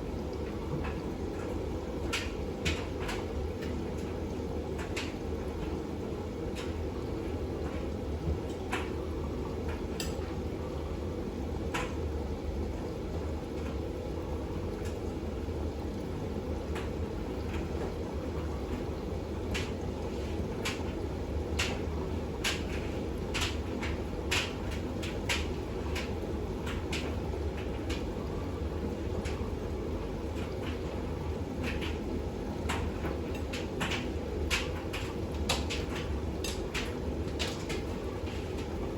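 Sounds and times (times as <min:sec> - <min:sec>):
washing machine drum hum: 0:00.0 - 0:38.9
washing machine clicks and knocks: 0:00.4 - 0:05.8, 0:11.6 - 0:12.0, 0:18.6 - 0:19.8, 0:20.5 - 0:28.1, 0:30.2 - 0:38.9.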